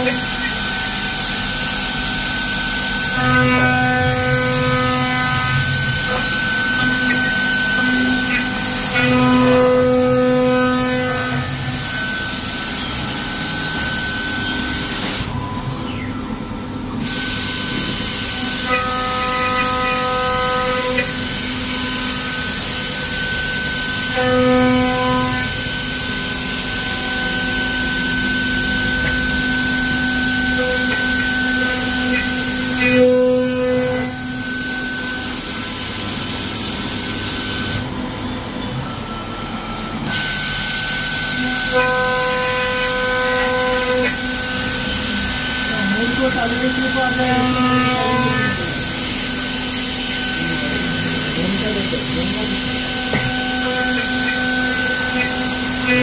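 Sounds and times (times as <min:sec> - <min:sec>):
router spindle whine: 0:00.0 - 0:56.0.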